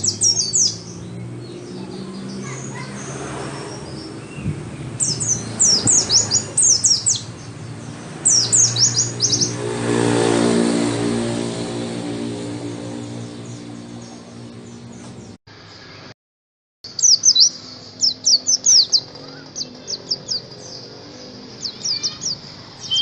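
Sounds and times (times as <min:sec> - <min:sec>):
vehicle engine passing: 0:00.0 - 0:15.4
bird singing high sliding notes: 0:00.0 - 0:16.1, 0:16.9 - 0:23.0.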